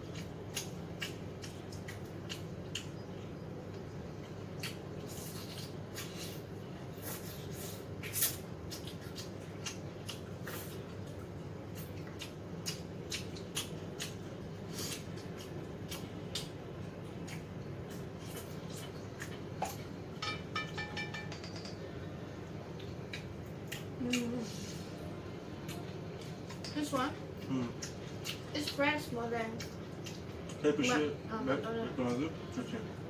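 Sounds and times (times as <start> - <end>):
crunching fried chicken: 0.0 - 19.9
mouth sounds of chewing: 0.0 - 19.9, 22.7 - 31.0
steady low hum: 0.0 - 33.0.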